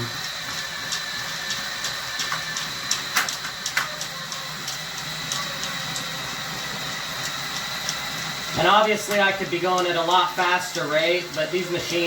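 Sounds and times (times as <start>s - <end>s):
drain snake cable clicking: 0.2s - 6.4s, 9.0s - 10.0s.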